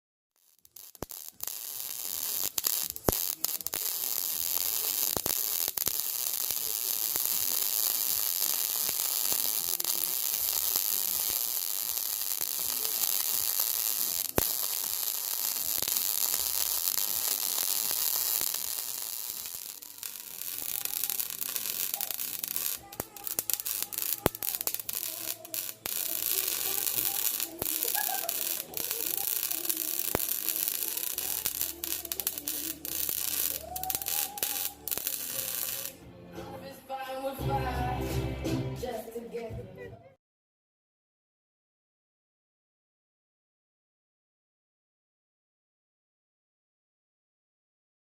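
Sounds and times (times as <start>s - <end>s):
arc welding crackling sizzle: 0.4s - 36.0s.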